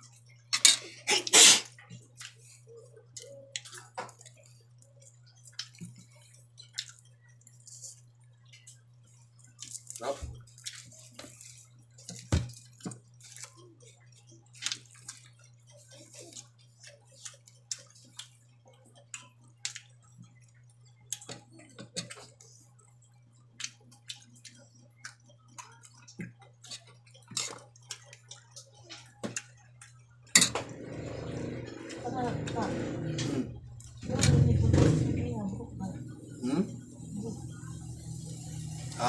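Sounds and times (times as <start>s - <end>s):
steady low hum: 0.0s - 39.0s
wet chewing and lip smacks: 3.2s - 8.8s.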